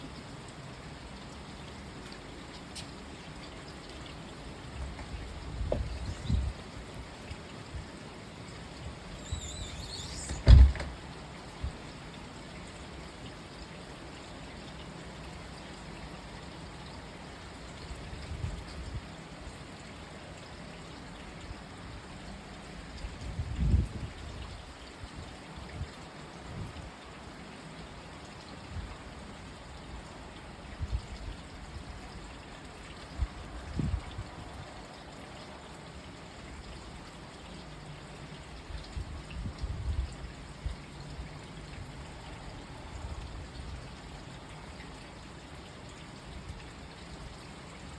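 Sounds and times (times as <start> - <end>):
rain falling: 0.0 - 23.0
water trickling and pouring: 0.0 - 47.9.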